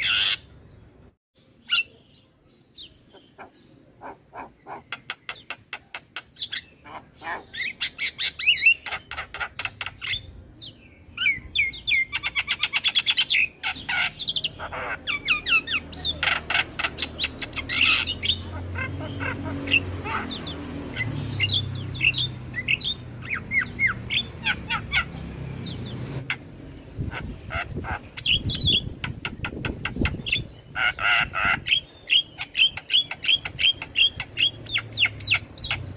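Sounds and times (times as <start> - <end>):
bird squawks: 0.0 - 0.5, 3.1 - 10.3, 11.2 - 25.2, 26.2 - 35.9
bird song with clicking chatter: 2.7 - 14.4.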